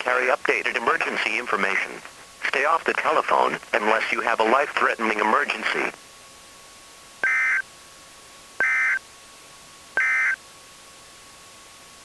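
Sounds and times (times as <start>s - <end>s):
buzzy two-tone digital bursts: 7.2s - 7.6s, 8.6s - 9.0s, 10.0s - 10.4s
faint steady tone: 7.2s - 7.9s, 8.6s - 11.0s.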